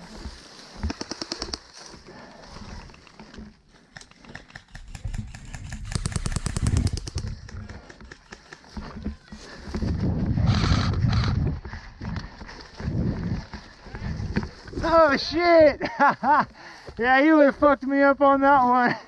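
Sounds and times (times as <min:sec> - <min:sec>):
airsoft gun firing: 0:04.3 - 0:08.3.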